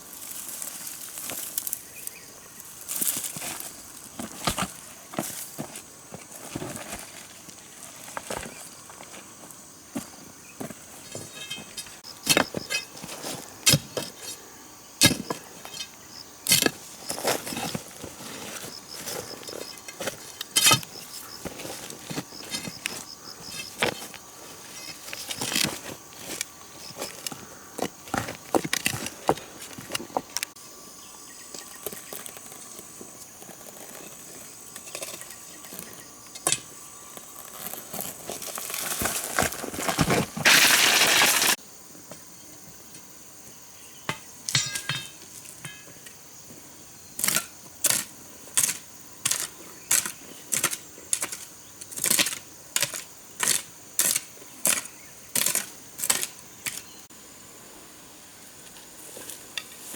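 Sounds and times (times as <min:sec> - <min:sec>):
stones knocking together: 0:27.8 - 0:30.4, 0:38.5 - 0:41.6.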